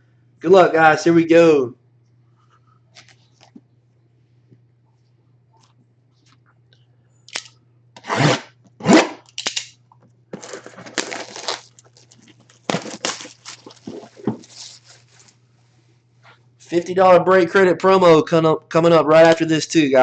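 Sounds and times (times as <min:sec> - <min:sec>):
card box tearing open: 0:10.4 - 0:11.7, 0:12.6 - 0:14.6.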